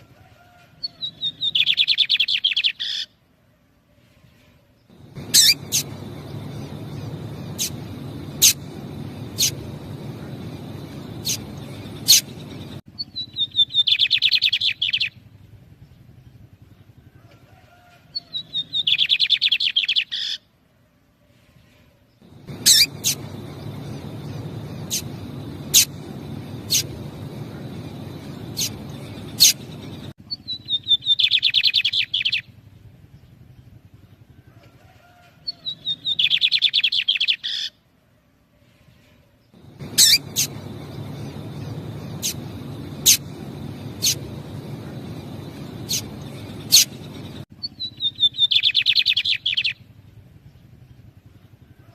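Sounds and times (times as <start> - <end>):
bird song of rapid notes: 0.8 - 3.2, 4.8 - 17.4, 18.1 - 20.5, 22.1 - 34.4, 35.4 - 37.8, 39.4 - 51.9.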